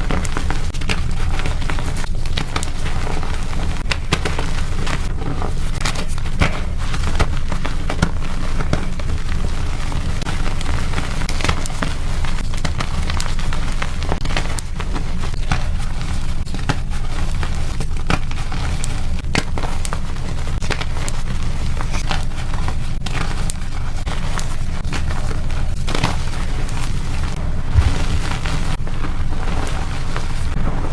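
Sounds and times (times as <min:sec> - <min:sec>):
low rumble: 0:27.1 - 0:30.9.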